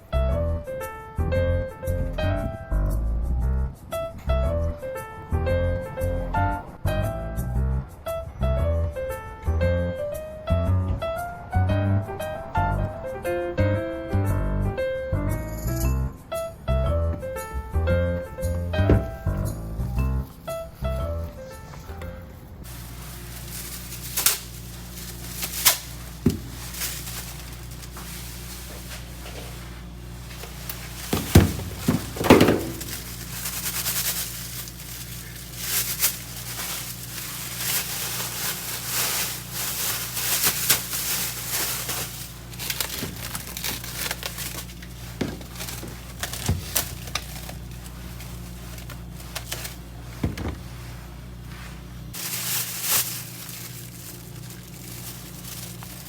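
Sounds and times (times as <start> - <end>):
steady low hum: 16.0 - 56.0
rustling and crinkling: 16.4 - 56.0.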